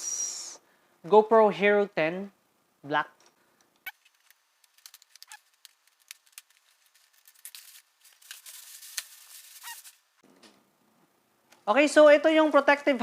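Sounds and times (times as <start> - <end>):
cardboard packaging rustling and tearing: 3.9 - 10.2.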